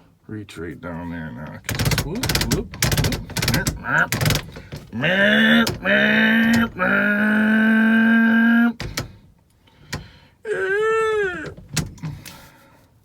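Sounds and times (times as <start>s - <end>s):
sharp clicks: 1.5s - 7.0s, 8.8s - 9.2s
man whooping: 3.4s - 8.8s, 10.5s - 11.6s.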